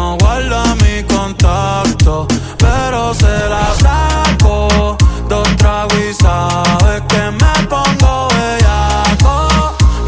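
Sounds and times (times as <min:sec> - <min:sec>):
deep steady bass: 0:02.0 - 0:05.4
booming kick drum: 0:02.6 - 0:04.8.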